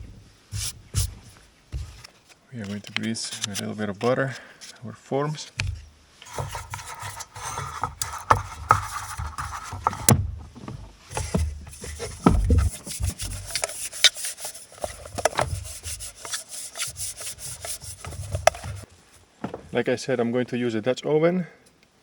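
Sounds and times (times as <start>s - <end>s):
hand rubbing butter on metal tins: 5.6s - 10.1s, 11.1s - 18.9s.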